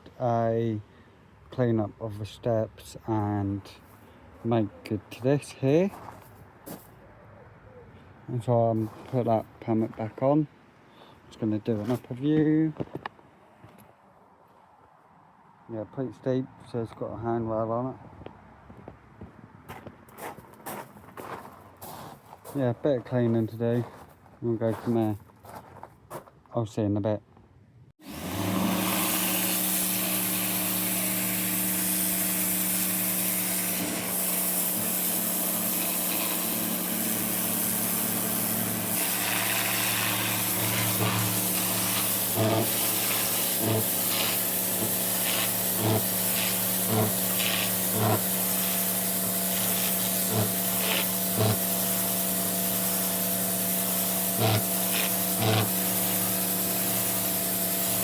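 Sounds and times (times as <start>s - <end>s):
power tool humming with rushing hiss: 28.0s - 58.0s
short scraping bursts: 28.2s - 58.0s.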